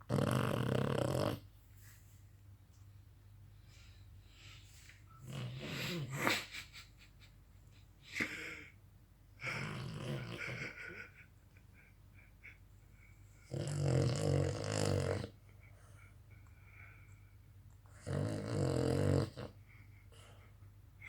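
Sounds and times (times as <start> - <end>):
dog snoring loudly: 0.0 - 1.4, 5.2 - 6.4, 9.4 - 10.8, 13.4 - 15.4, 18.0 - 19.6.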